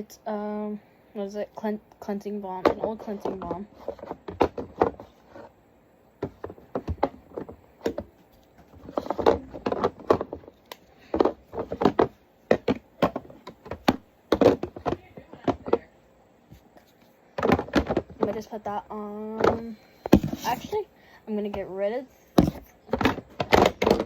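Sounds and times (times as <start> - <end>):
jars and bottles knocking: 22.4 - 24.0.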